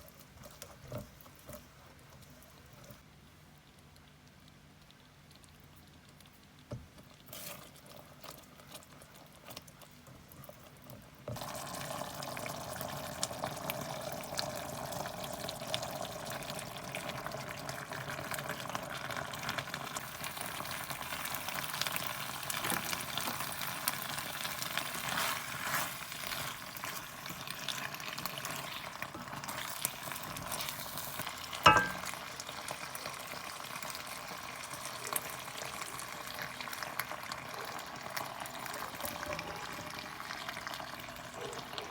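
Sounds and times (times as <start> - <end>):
food sizzling in a pan: 11.3 - 41.8.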